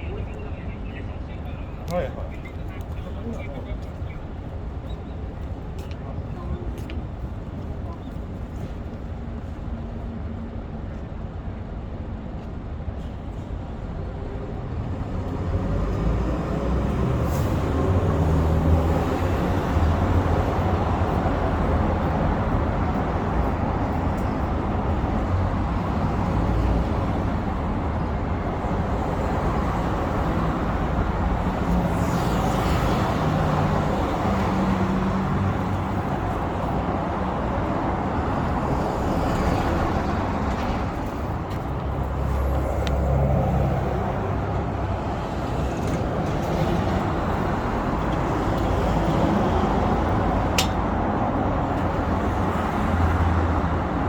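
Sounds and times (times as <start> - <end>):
cars and buses passing: 0.0 - 54.0.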